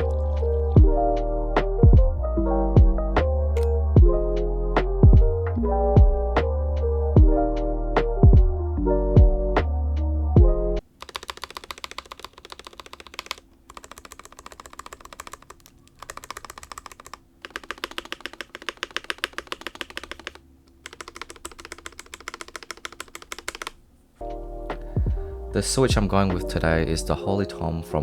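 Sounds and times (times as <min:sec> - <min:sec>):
keyboard keys clacking: 0:00.0 - 0:03.8, 0:10.9 - 0:28.0
beat music: 0:00.0 - 0:10.8, 0:24.2 - 0:28.0.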